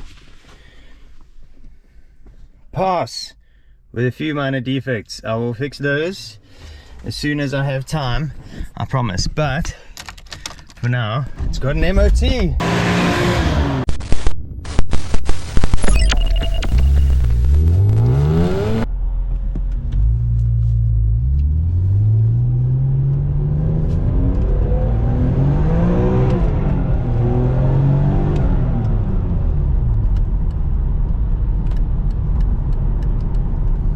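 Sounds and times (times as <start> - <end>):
car engine accelerating: 12.6 - 13.9, 16.1 - 33.9.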